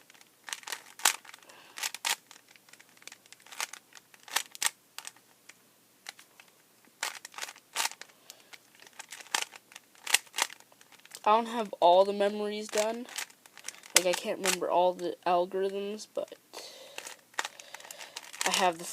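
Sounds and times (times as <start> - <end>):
plastic cube clicking: 0.1 - 5.2, 6.0 - 8.1, 8.7 - 11.2, 12.7 - 14.6, 17.0 - 18.5.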